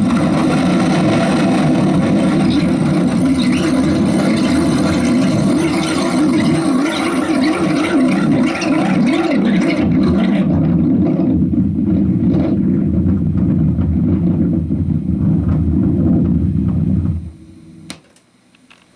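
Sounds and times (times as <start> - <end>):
jet aircraft roar: 0.0 - 17.4.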